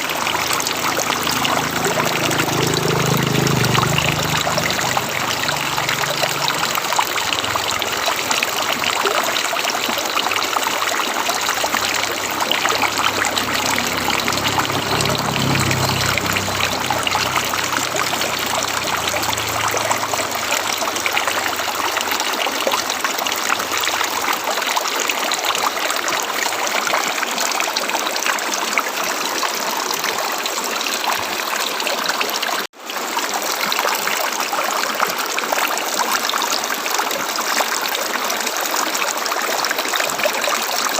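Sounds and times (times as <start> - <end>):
low rumble: 0.0 - 24.2
river water rushing over rocks: 0.0 - 40.8.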